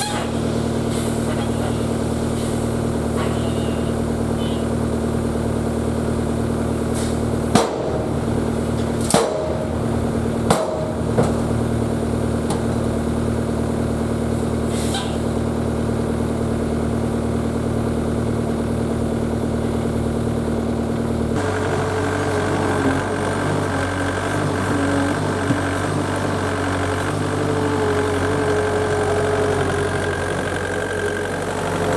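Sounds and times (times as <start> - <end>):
diesel engine droning: 0.0 - 31.9
sharp knocks: 7.5 - 11.8.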